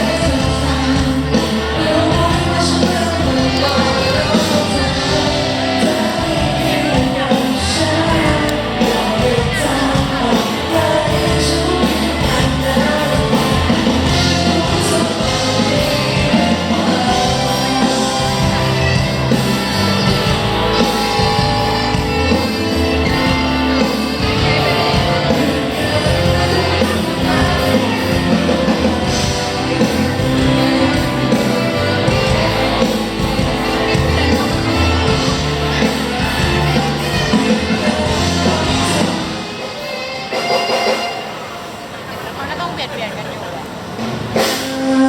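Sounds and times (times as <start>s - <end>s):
person singing: 0.0s - 41.2s
live band playing: 0.0s - 45.0s.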